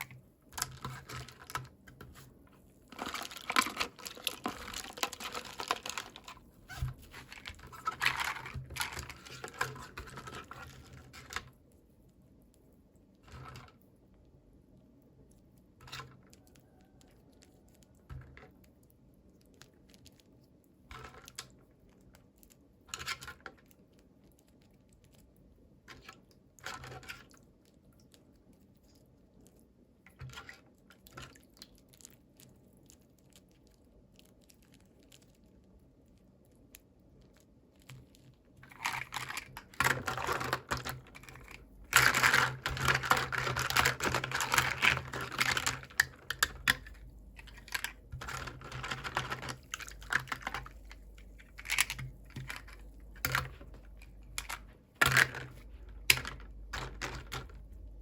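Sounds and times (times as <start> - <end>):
packaging rustling: 2.9 - 10.6, 38.6 - 57.7.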